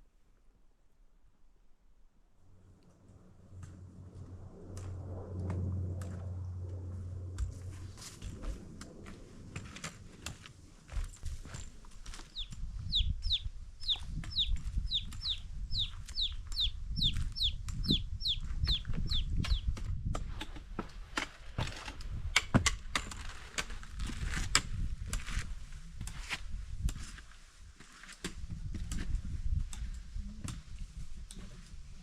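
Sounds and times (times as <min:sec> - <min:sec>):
low rumble: 0:02.4 - 0:20.2
songbird calling: 0:12.3 - 0:19.7.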